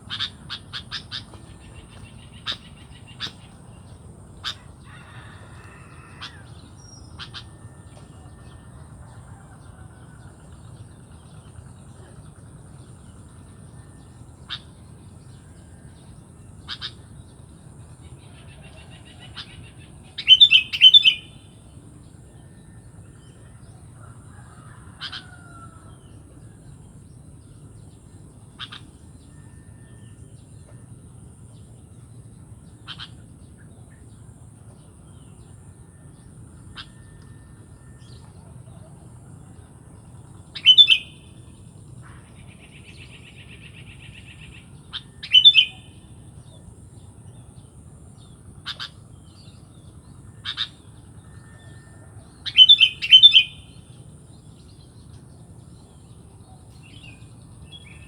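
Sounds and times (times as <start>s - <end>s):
bulbul calling: 0.0s - 5.0s, 19.2s - 21.4s, 40.5s - 41.4s, 42.1s - 46.1s, 52.4s - 53.9s.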